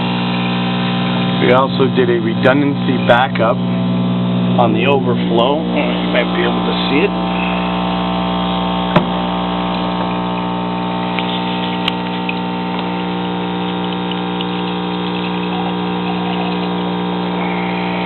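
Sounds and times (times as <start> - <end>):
pump electric hum: 0.0 - 18.0
water moving through pipes: 9.7 - 18.0.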